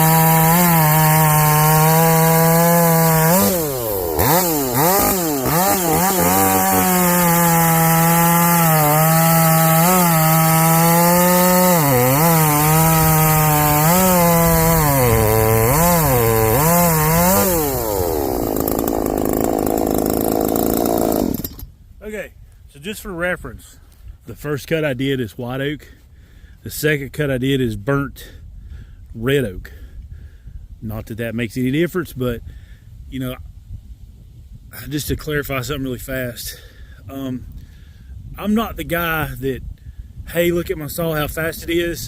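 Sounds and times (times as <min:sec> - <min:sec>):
chainsaw cutting through log: 0:00.0 - 0:21.7.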